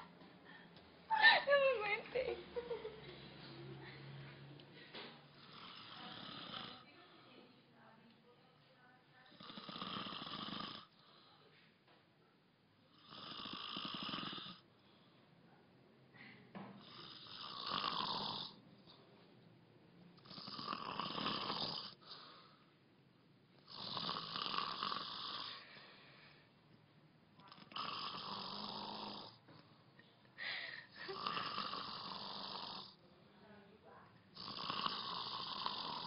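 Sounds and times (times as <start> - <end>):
man snoring: 5.3 - 6.8, 9.3 - 11.0, 12.9 - 14.6, 16.8 - 18.6, 20.2 - 22.2, 23.6 - 25.6, 27.4 - 29.4, 30.9 - 33.0, 34.4 - 36.0
man breathing quietly: 22.0 - 23.0, 25.4 - 26.7.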